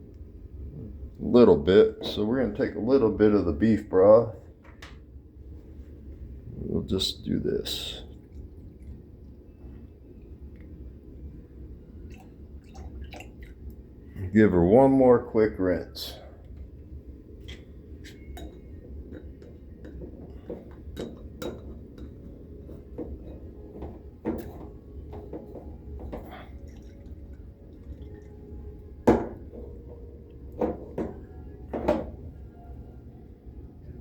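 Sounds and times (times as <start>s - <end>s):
glass and dishes clinking: 18.2s - 28.3s.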